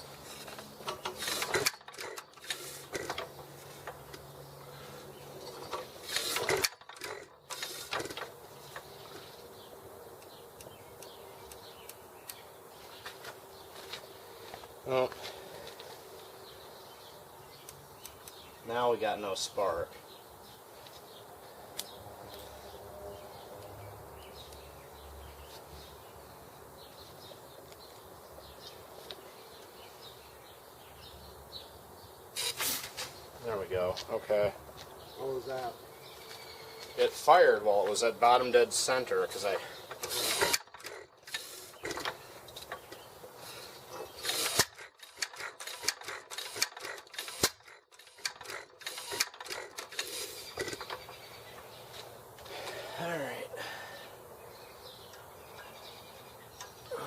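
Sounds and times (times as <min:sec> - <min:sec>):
farm engine clicks and knocks: 0:00.4 - 0:04.3, 0:05.5 - 0:08.9, 0:39.3 - 0:43.1, 0:44.0 - 0:51.7.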